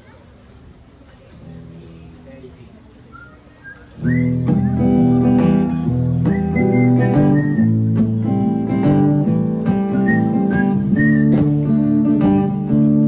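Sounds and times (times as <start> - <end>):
whistled notes: 3.1 - 5.0, 6.2 - 7.8, 9.9 - 11.4
acoustic guitar strumming: 4.0 - 13.0.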